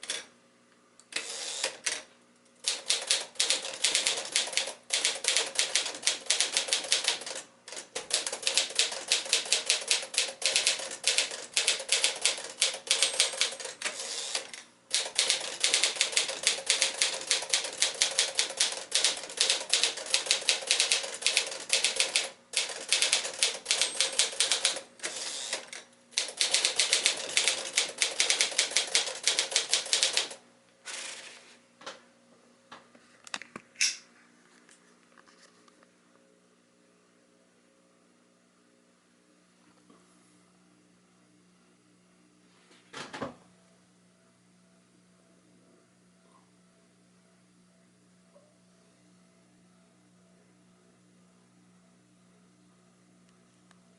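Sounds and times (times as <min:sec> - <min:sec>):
manual typewriter typing: 0:02.6 - 0:31.2.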